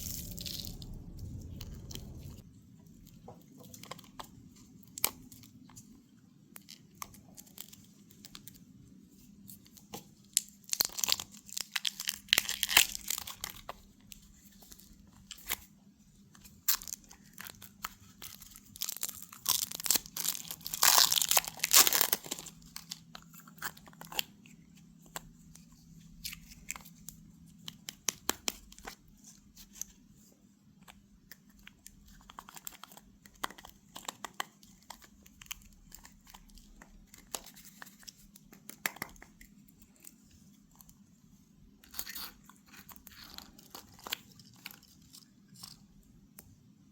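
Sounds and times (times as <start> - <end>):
packaging tearing and crinkling: 0.0 - 1.9, 10.4 - 13.7, 16.7 - 24.3.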